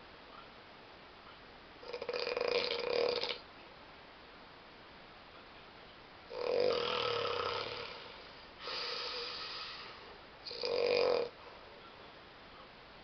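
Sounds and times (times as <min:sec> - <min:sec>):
person snoring: 0:01.8 - 0:03.4, 0:06.3 - 0:11.4.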